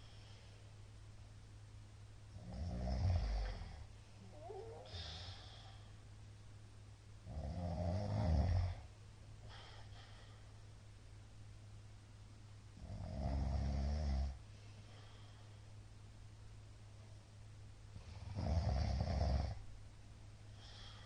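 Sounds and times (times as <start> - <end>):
steady low hum: 0.0 - 21.0
man snoring loudly: 2.4 - 3.8, 7.3 - 8.8, 12.8 - 14.4, 18.3 - 19.6
faint breaths: 3.2 - 6.1, 9.4 - 10.8, 14.4 - 15.9, 20.4 - 21.0.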